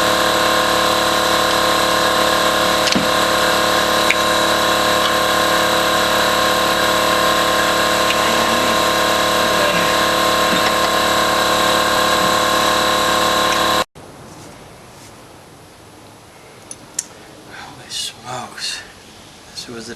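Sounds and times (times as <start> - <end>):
machine humming with hiss: 0.0 - 13.9.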